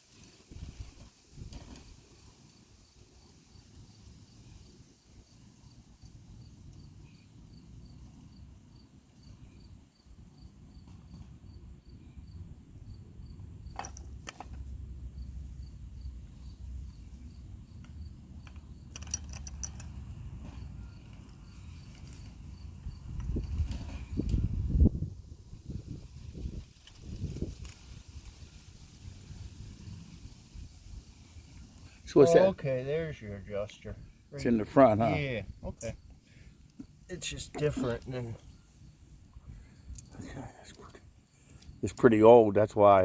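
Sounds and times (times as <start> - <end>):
insect chirping: 0.0 - 42.8.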